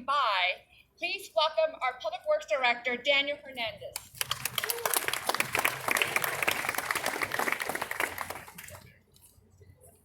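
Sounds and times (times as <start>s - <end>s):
audience applauding: 4.2s - 8.7s.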